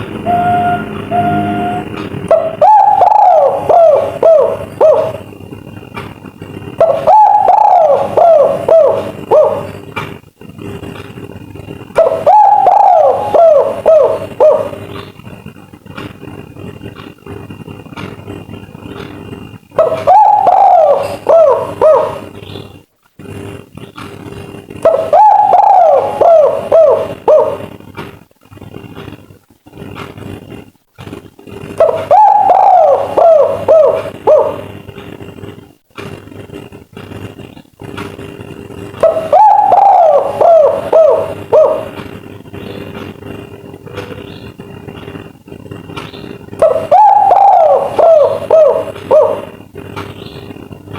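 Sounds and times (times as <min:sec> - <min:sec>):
dove cooing: 0:00.0 - 0:05.3, 0:06.8 - 0:09.8, 0:12.0 - 0:15.1, 0:19.8 - 0:22.4, 0:24.8 - 0:27.7, 0:31.8 - 0:34.8, 0:39.0 - 0:42.9, 0:46.6 - 0:49.7.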